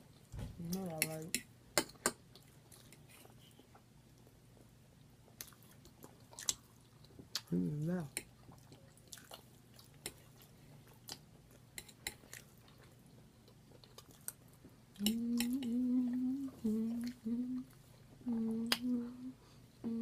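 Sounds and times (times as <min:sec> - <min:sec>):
wet chewing and lip-smacking: 0:05.3 - 0:07.5, 0:08.2 - 0:15.6
person humming: 0:15.0 - 0:20.0.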